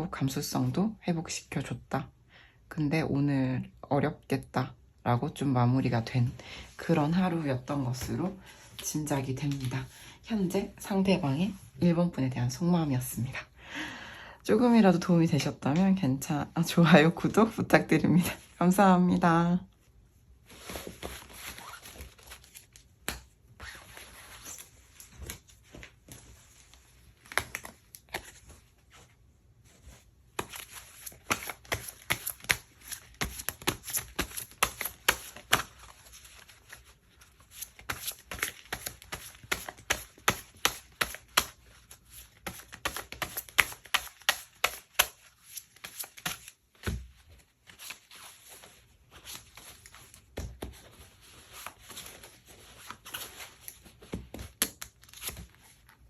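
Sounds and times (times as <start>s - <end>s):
cards being shuffled: 20.6s - 29.0s, 29.8s - 56.0s.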